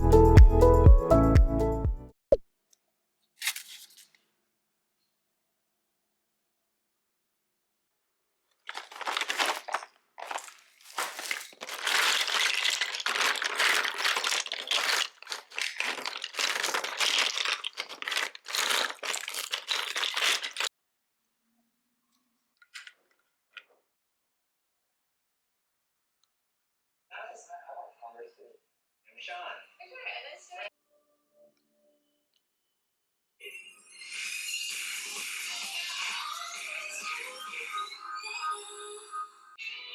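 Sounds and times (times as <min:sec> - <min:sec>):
crinkling and rustling: 0:03.4 - 0:04.2, 0:08.6 - 0:20.7.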